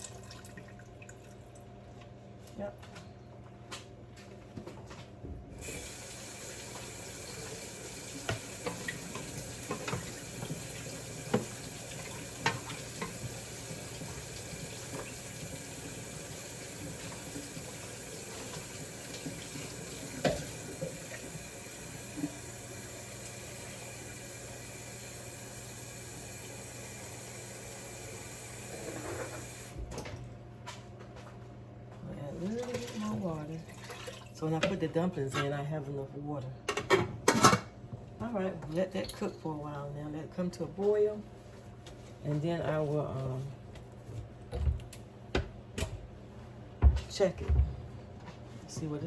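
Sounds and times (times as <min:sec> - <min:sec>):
tap water filling a container: 0:00.0 - 0:01.5, 0:05.6 - 0:29.8, 0:33.7 - 0:34.4.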